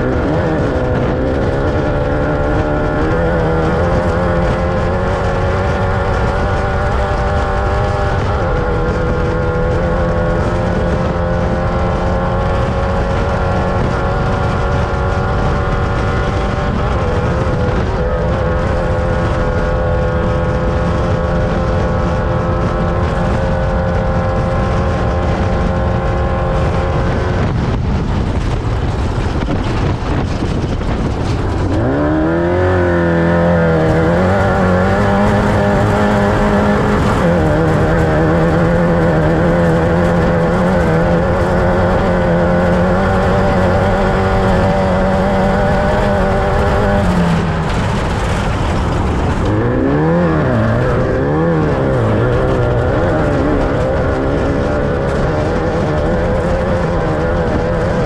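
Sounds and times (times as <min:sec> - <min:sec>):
constant noise: 0:00.0 - 0:58.0
race vehicle engine revving: 0:00.0 - 0:58.0.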